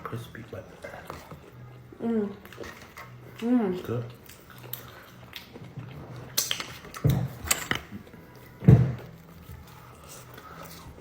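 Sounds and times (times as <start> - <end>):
person chewing food: 0.8 - 7.3.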